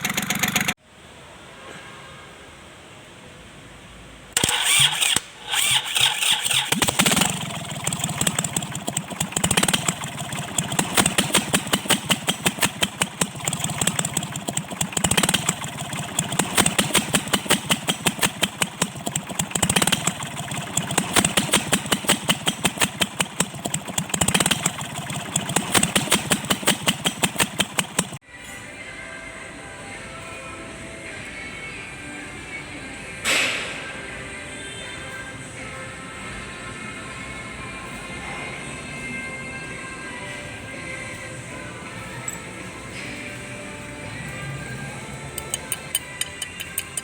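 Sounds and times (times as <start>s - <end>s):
tractor engine knocking: 0.0s - 0.8s, 4.4s - 28.2s, 45.1s - 47.0s.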